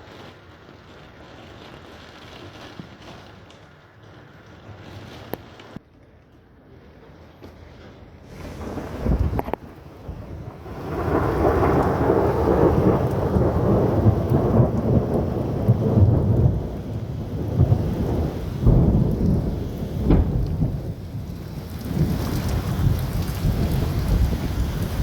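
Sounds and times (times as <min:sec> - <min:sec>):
rain: 0:00.0 - 0:25.0
thunder rumbling: 0:08.3 - 0:25.0.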